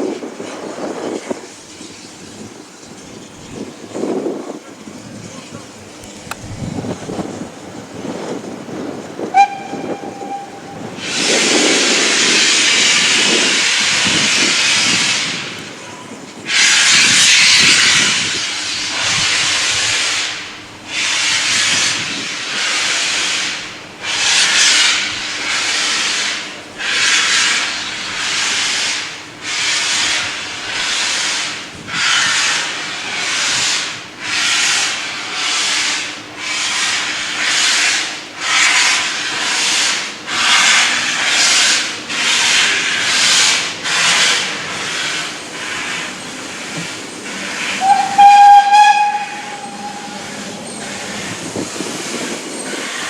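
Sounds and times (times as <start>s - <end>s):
locomotive exhaust chuffs: 0.1s - 53.0s
steam hissing: 5.9s - 53.0s
steam locomotive whistle: 9.2s - 15.6s, 47.5s - 51.2s.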